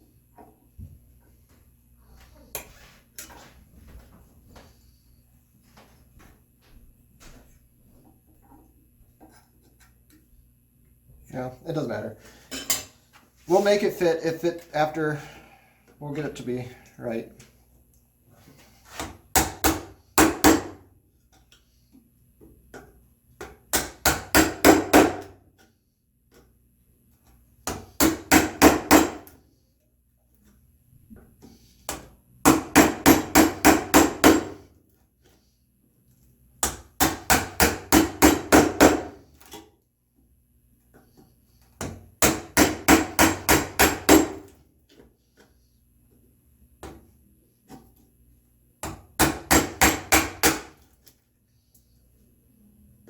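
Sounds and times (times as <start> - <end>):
mallet striking chisel: 41.8 - 44.5.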